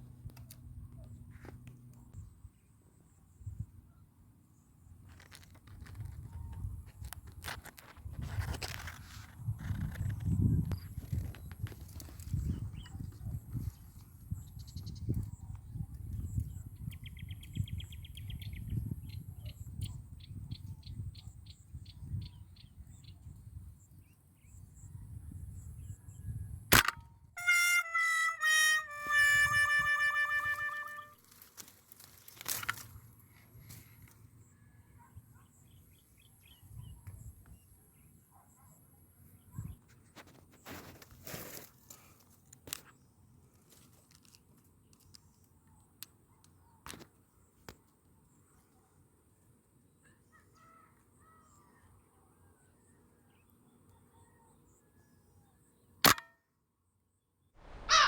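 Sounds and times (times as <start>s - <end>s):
rustle: 5.0s - 12.6s, 30.5s - 34.3s, 40.0s - 45.4s
airgun shot: 26.7s - 27.1s, 56.0s - 56.3s, 57.6s - 58.0s.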